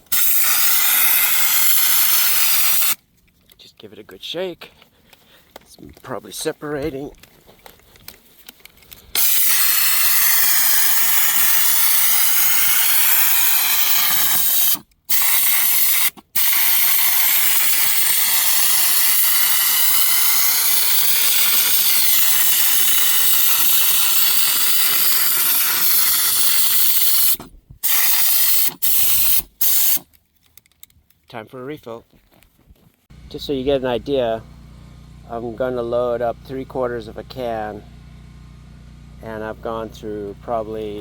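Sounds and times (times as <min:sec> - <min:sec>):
spray gun hissing: 0:00.0 - 0:03.0, 0:09.2 - 0:30.0.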